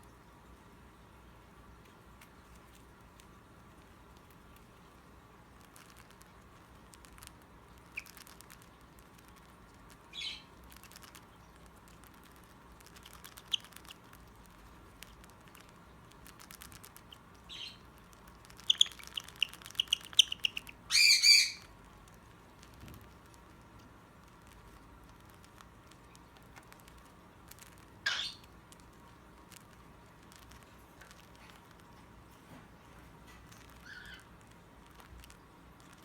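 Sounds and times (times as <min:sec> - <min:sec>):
beak clicks and taps: 0:05.6 - 0:20.8, 0:21.8 - 0:36.0
bird chirping: 0:07.9 - 0:08.4, 0:10.1 - 0:11.2, 0:13.0 - 0:14.0, 0:16.8 - 0:17.9, 0:18.5 - 0:21.7, 0:28.0 - 0:28.5, 0:33.6 - 0:34.3
loud harsh bird squawk: 0:20.4 - 0:21.7.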